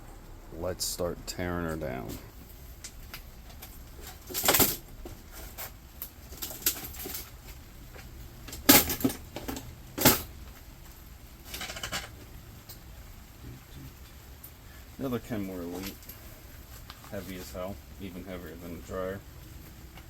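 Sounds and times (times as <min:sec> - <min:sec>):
metal and plastic parts clanking: 0:03.5 - 0:04.8, 0:06.3 - 0:07.3, 0:08.5 - 0:10.3, 0:11.5 - 0:12.2.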